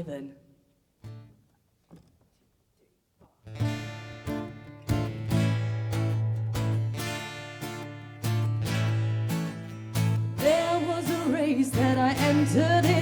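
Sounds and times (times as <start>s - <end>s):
acoustic guitar strumming chords: 3.5s - 13.0s.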